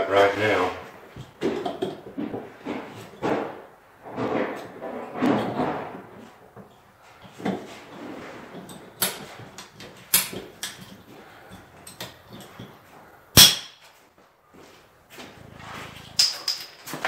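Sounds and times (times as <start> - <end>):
tools and pipe parts clicking: 8.5 - 12.8, 16.1 - 17.0.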